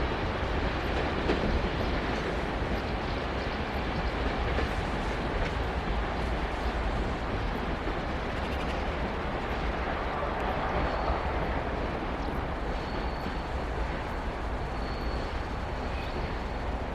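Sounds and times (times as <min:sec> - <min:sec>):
train wheels rumbling on rails: 0:00.0 - 0:16.9
high wheel squeals: 0:12.7 - 0:13.6, 0:14.6 - 0:16.7.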